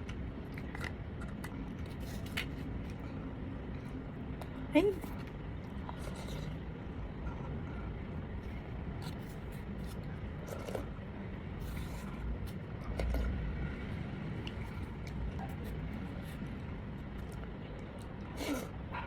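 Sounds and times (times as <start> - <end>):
low background rumble: 0.0 - 19.0.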